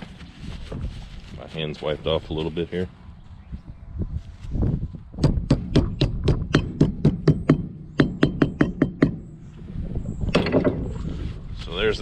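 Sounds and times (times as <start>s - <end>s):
rapid sharp knocks: 5.2s - 9.2s.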